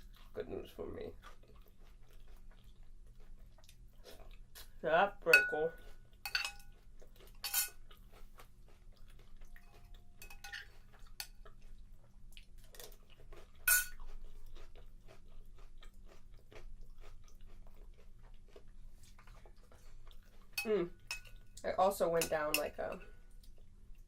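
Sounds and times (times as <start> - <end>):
crunchy chewing: 0.0 - 4.8, 5.8 - 21.6
metal spoon clinking against bowl: 5.3 - 6.7, 7.4 - 7.8, 10.2 - 11.3, 13.7 - 14.0, 20.6 - 21.4
spoon scraping bowl: 5.3 - 6.7, 7.4 - 7.8, 9.6 - 11.3.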